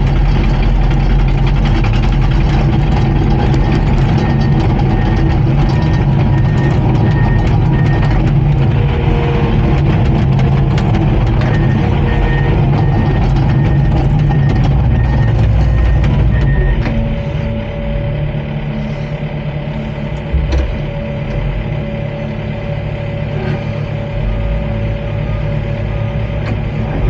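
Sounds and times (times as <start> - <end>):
bulldozer diesel engine running: 0.0 - 27.0
back-up alarm beeping: 3.4 - 19.0.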